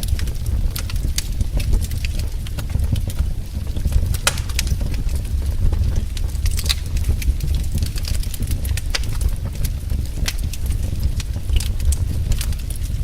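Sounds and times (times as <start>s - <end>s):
wood fire crackling and popping: 0.0s - 13.0s.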